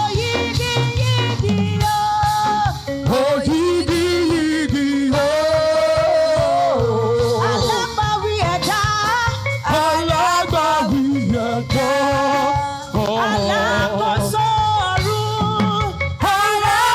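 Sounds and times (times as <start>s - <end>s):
instrumental backing with beat: 0.0s - 16.9s
church choir singing: 11.7s - 14.3s.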